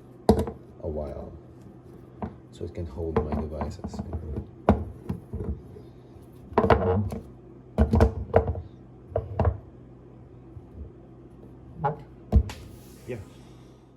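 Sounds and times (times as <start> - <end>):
hard objects knocking and clunking: 0.3 - 0.7, 3.0 - 5.8, 6.5 - 9.7, 11.8 - 12.6.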